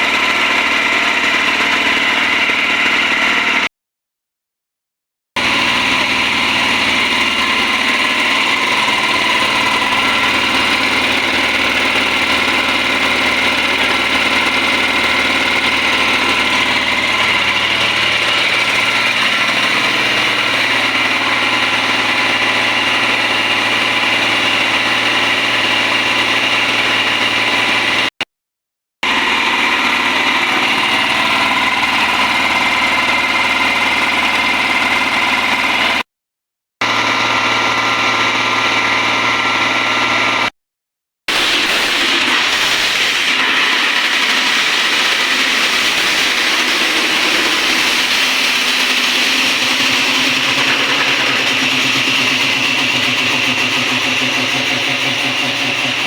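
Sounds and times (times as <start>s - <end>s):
air compressor running: 0.0s - 3.7s, 5.4s - 28.2s, 29.0s - 36.0s, 36.8s - 40.5s, 41.3s - 56.0s.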